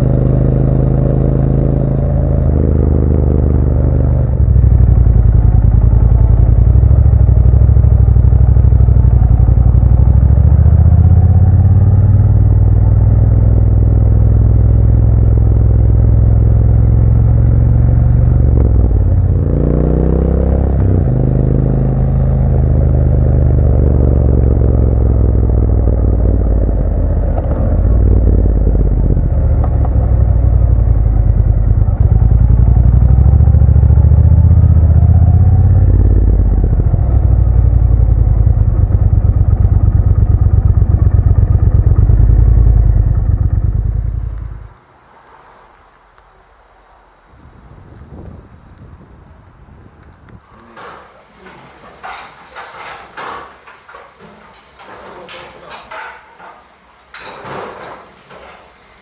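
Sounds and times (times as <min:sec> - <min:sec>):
motorcycle engine running: 0:00.0 - 0:44.8.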